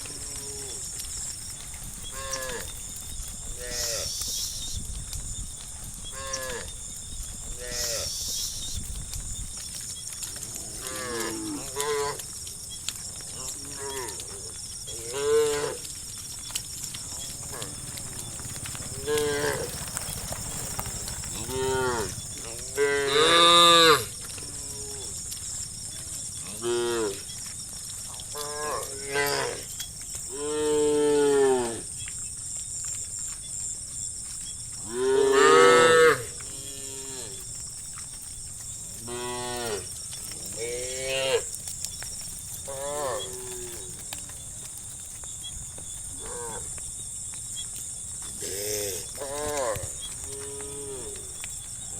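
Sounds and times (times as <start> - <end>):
cattle mooing: 17.0 - 25.1, 34.9 - 45.2.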